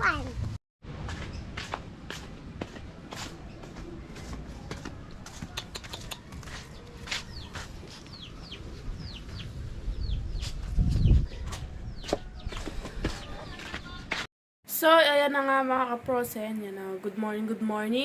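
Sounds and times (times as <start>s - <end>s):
chicks peeping: 4.2s - 14.0s.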